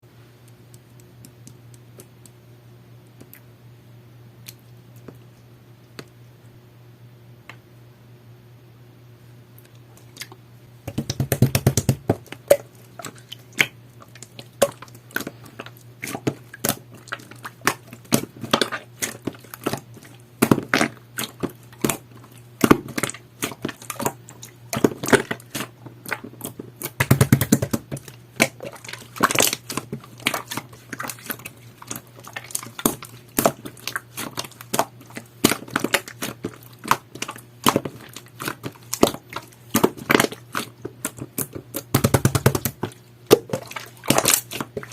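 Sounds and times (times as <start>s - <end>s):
slime clicking and popping: 22.6s - 44.9s.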